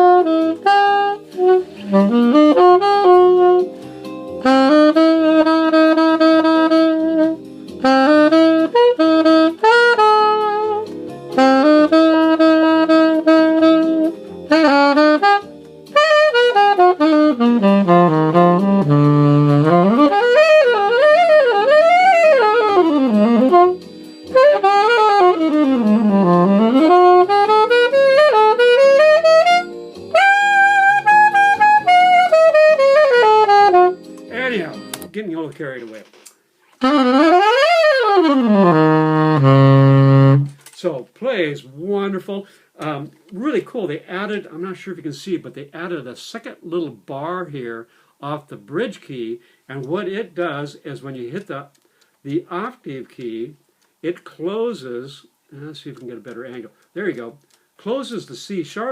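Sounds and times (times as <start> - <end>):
alto saxophone playing: 0.0 - 35.1, 36.7 - 40.6.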